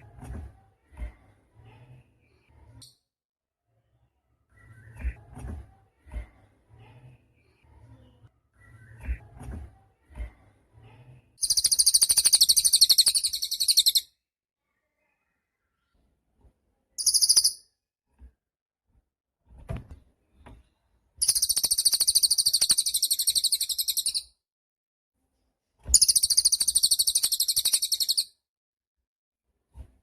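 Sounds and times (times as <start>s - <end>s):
songbird trilling: 17.0s - 17.6s, 26.0s - 28.2s.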